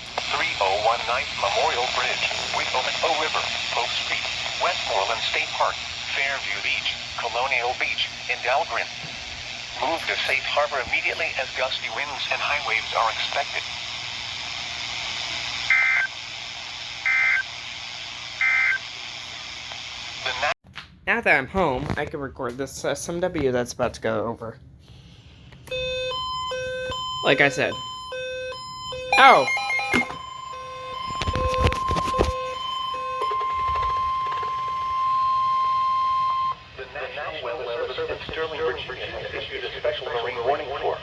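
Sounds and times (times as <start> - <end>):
two-tone warbling data tones: 25.7 - 36.6.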